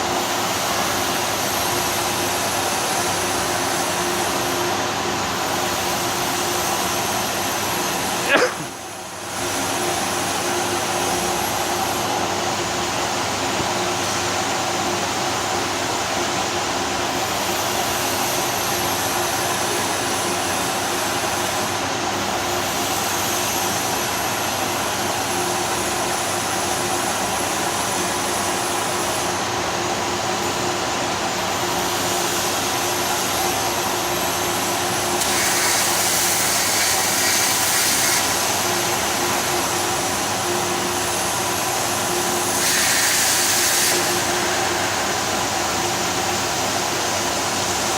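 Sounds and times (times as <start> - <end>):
workshop machinery humming: 0.0 - 47.9
loud hiss: 35.0 - 40.1, 42.2 - 47.4.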